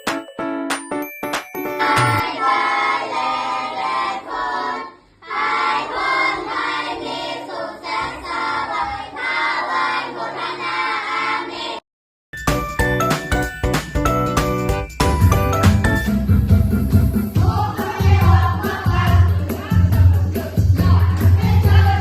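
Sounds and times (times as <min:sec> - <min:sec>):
children singing: 0:01.8 - 0:11.8, 0:17.4 - 0:22.0.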